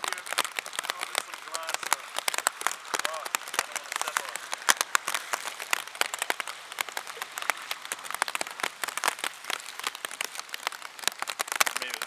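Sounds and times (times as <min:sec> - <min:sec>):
rain falling: 0:00.0 - 0:12.0
raindrops ticking near microphone: 0:00.0 - 0:12.0.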